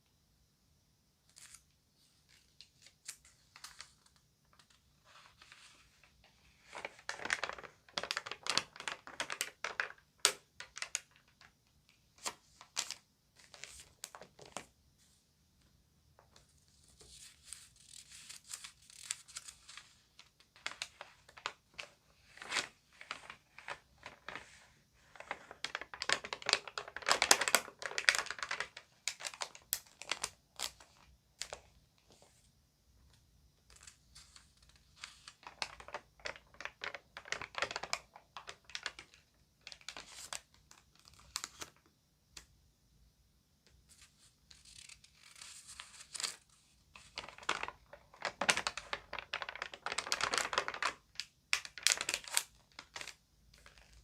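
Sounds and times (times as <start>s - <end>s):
magazine pages rustling: 2.2s - 10.0s, 12.2s - 14.7s, 16.4s - 32.3s.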